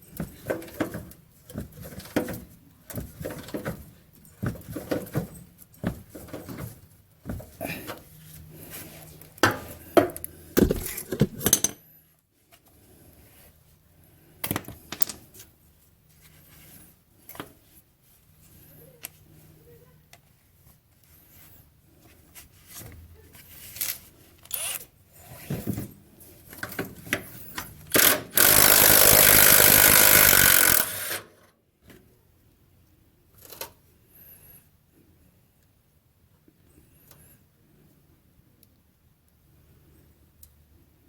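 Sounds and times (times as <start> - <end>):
impact wrench hammering: 27.9 - 31.2.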